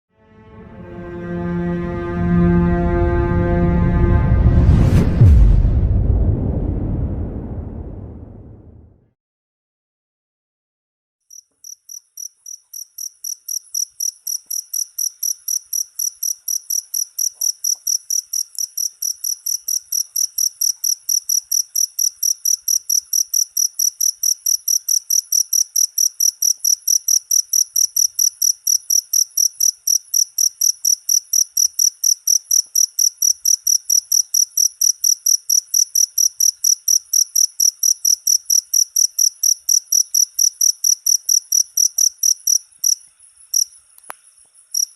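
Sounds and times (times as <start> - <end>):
cricket chirping: 11.3 - 44.9.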